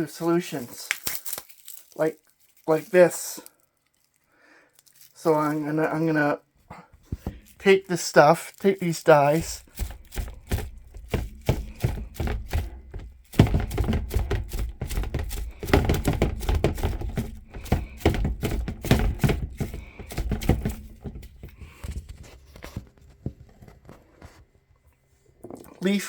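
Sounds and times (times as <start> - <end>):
plastic bottles knocking on table: 7.0 - 7.6, 9.3 - 21.8.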